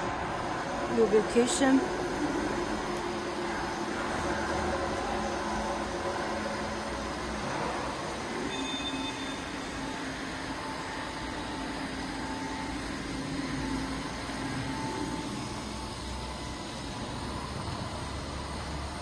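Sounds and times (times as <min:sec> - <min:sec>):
machinery hum and hiss: 0:00.0 - 0:19.0
faint tone: 0:08.3 - 0:16.7.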